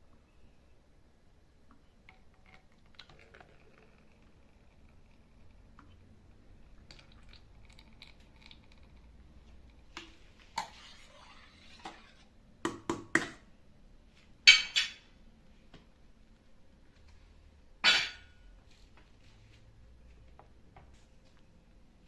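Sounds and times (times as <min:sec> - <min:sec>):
kitchenware knocks and clinks: 0:14.5 - 0:15.0, 0:17.8 - 0:18.4
kitchenware clatter: 0:14.5 - 0:15.1, 0:17.8 - 0:18.4.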